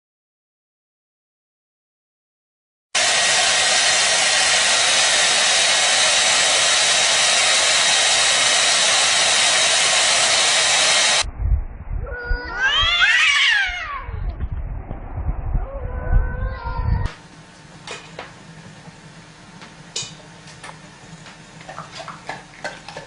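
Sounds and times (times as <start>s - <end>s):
cat meowing: 12.0s - 14.4s, 15.6s - 17.1s.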